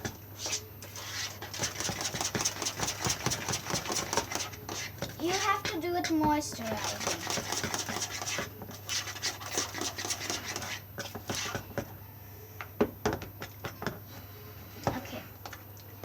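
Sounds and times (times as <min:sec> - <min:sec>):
spoon scraping bowl: 0:00.4 - 0:11.6.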